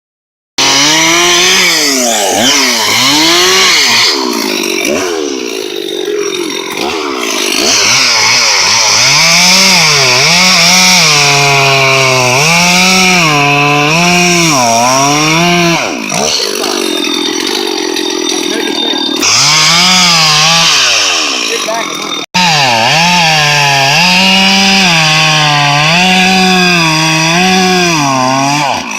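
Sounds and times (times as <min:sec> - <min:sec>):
chainsaw cutting wood: 0:00.6 - 0:28.9.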